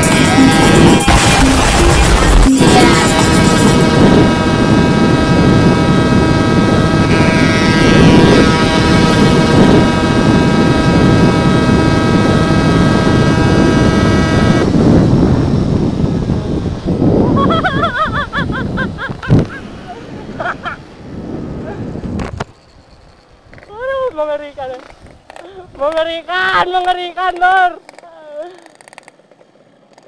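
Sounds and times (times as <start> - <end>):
two-stroke motorcycle engine revving: 0.0 - 19.6
wavering whine: 0.0 - 23.7
wind and road rush: 0.0 - 28.0.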